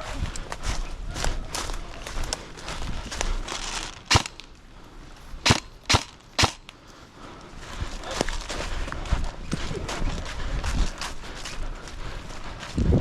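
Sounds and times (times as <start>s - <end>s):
footsteps: 0.0s - 13.0s
rustling: 0.6s - 8.8s
airsoft gun shots: 4.1s - 4.4s, 5.4s - 6.7s.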